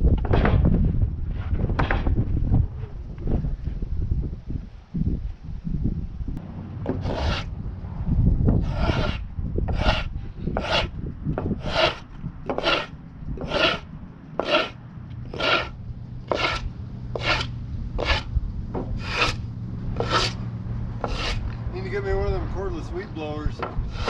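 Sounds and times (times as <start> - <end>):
low steady hum: 2.2 - 24.0
brush sweeping sawdust: 6.9 - 7.5, 8.7 - 9.2, 9.8 - 10.9, 11.6 - 13.8, 14.4 - 18.3, 19.0 - 19.4, 20.0 - 20.4, 21.0 - 21.5.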